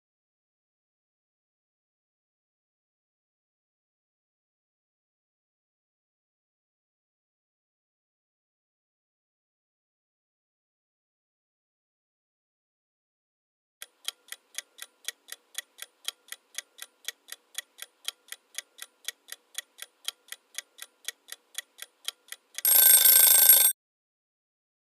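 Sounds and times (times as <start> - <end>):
clock ticking: 13.8 - 23.7
loud alarm ring: 22.6 - 23.7.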